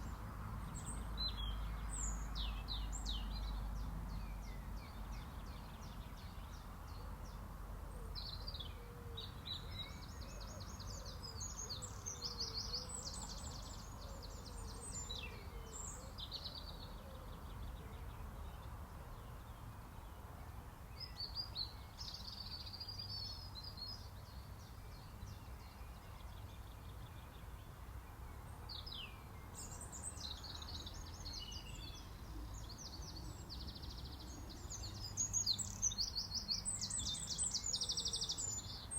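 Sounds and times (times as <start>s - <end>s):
songbirds chirping and trilling: 0.0s - 38.9s.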